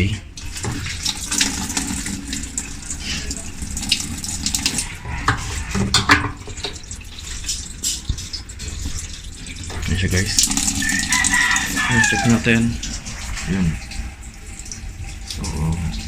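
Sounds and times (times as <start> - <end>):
water running and splashing: 0.0 - 16.0
low steady hum: 2.0 - 7.3
sharp knocks: 5.3 - 6.8.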